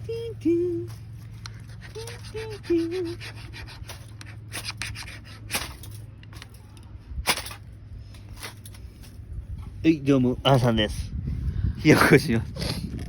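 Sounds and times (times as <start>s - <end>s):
scraping and rubbing strokes: 0.8s - 6.6s.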